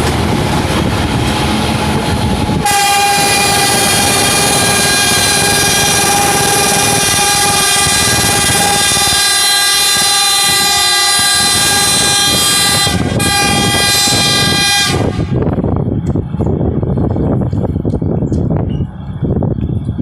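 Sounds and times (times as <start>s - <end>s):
low engine rumble: 0.0s - 20.0s
train horn blast: 2.6s - 15.4s.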